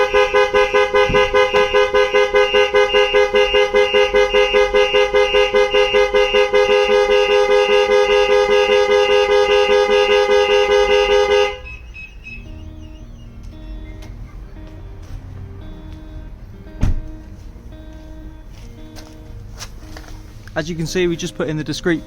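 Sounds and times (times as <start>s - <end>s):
van horn honking rapidly: 0.0s - 14.6s
soft background music: 0.0s - 22.0s.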